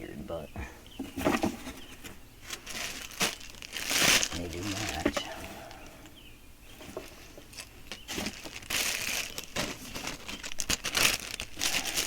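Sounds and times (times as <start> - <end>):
plastic packaging crinkling: 1.7 - 5.9, 6.8 - 12.0.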